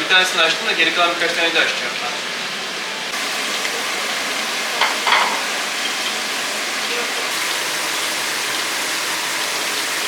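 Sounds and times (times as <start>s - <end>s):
food sizzling in a pan: 3.1s - 10.0s.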